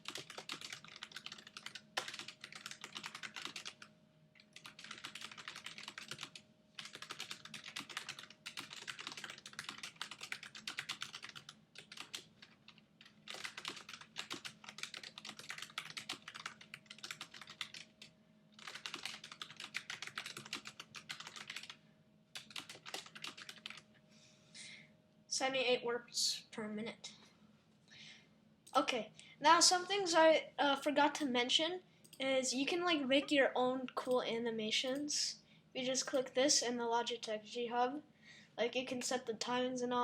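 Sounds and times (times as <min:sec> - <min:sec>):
mechanical keyboard typing: 0:00.0 - 0:21.8, 0:22.4 - 0:23.8.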